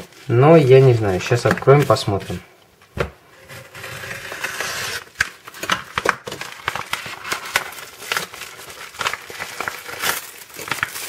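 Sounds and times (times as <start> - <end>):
wrapping crinkling: 0.0 - 2.4, 3.6 - 11.0
packaging tearing: 3.5 - 11.0.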